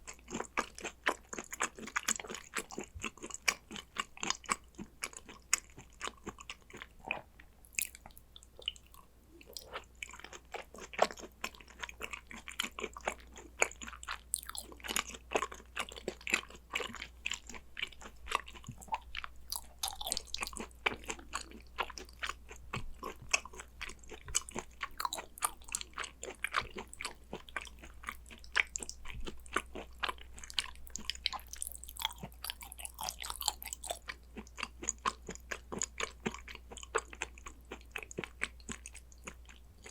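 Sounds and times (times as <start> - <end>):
wet chewing and mouth smacks: 0.0 - 39.9
crunchy bites: 12.6 - 34.2.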